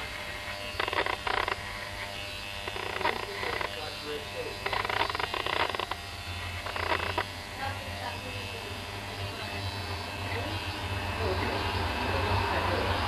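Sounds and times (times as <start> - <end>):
clippers scraping rasps: 0.0 - 7.7
electric hair clippers buzzing: 0.0 - 13.0.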